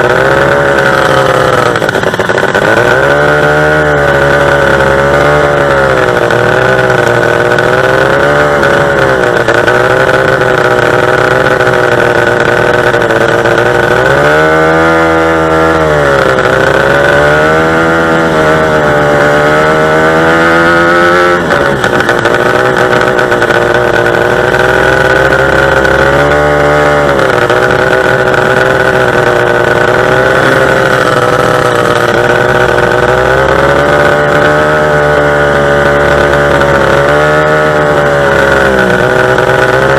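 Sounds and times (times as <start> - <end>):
racing boat engine at high revs: 0.0 - 39.9.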